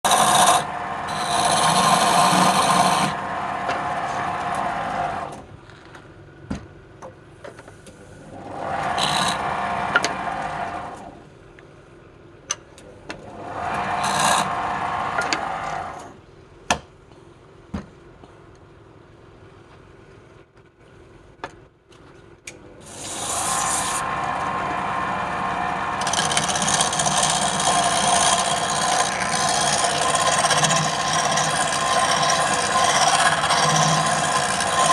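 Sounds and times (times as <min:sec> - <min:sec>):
lathe tool cutting spinning wood: 0:00.0 - 0:05.4, 0:08.4 - 0:11.1, 0:13.3 - 0:16.1, 0:22.8 - 0:34.9.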